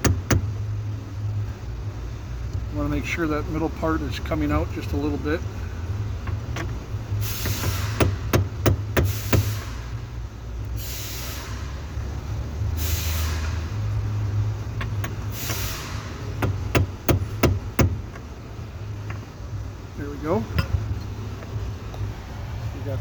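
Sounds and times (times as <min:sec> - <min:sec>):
short hissing rushes: 0:07.2 - 0:08.0, 0:09.1 - 0:10.0, 0:10.8 - 0:11.8, 0:12.8 - 0:13.8, 0:15.3 - 0:16.3.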